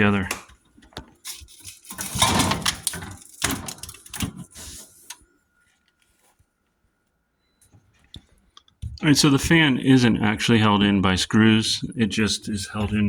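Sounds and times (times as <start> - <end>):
plastic parts rattling and scraping: 1.0 - 5.2.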